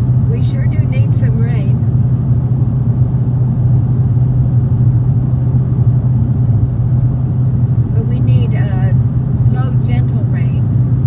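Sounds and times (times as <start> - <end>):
car engine droning: 0.0 - 11.0
road noise: 0.0 - 11.0.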